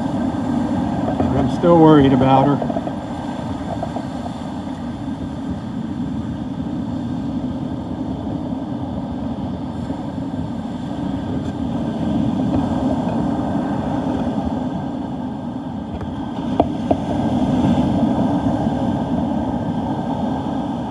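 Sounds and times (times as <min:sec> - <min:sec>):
wind rumbling: 0:00.0 - 0:06.0
surf on a beach: 0:00.0 - 0:20.9.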